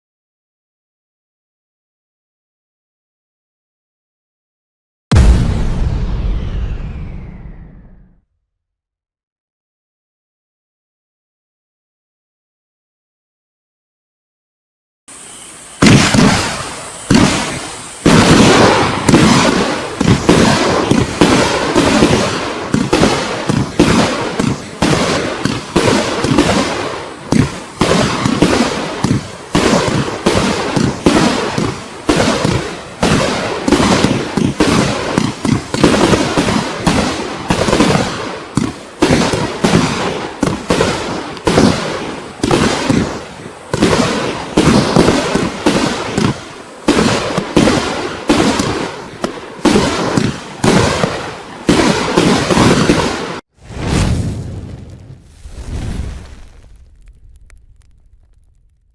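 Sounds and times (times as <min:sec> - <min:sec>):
firework cake shots: 0:15.2 - 0:54.0.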